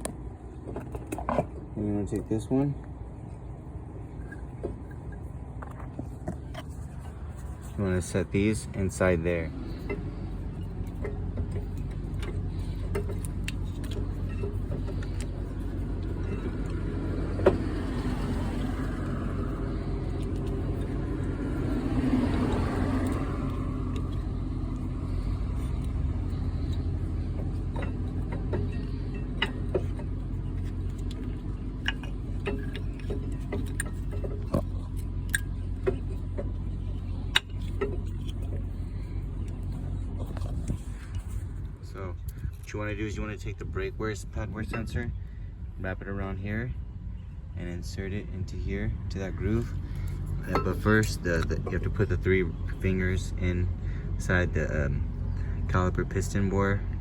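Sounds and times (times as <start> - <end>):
steady low hum: 0.0 - 57.0
vehicle passing: 14.8 - 31.8.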